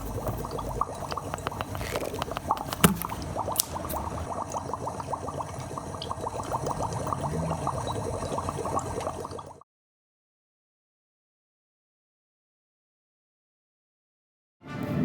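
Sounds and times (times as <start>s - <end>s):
crackle of liquid-like ticks: 0.0s - 9.4s.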